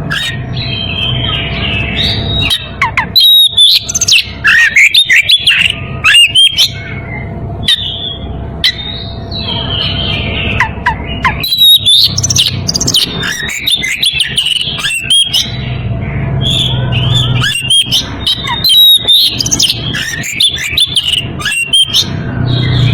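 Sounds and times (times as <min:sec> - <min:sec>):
bird singing chips and whistles: 0:02.0 - 0:06.9, 0:09.5 - 0:15.6, 0:16.4 - 0:22.9.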